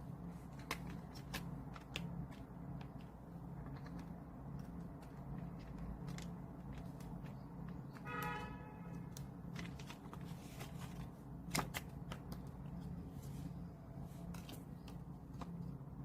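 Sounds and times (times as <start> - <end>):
packaging rustling and clicks: 0.4 - 8.1, 9.0 - 12.9.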